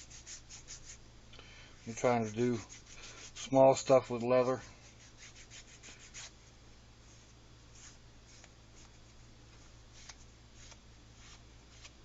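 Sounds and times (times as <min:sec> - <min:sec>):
nail file scratching leather: 0:00.0 - 0:01.0, 0:01.9 - 0:03.5, 0:04.9 - 0:06.3.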